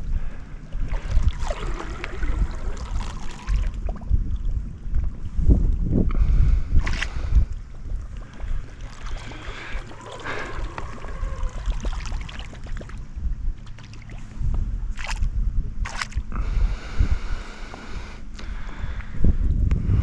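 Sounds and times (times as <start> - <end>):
wind buffeting microphone: 0.0 - 20.0
water splashing and lapping: 0.6 - 16.4.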